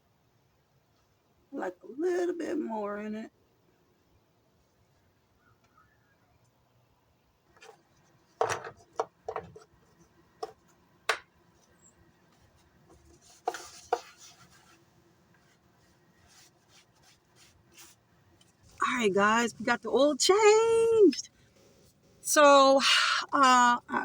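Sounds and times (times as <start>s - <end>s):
objects knocking and clicking: 7.6s - 9.7s.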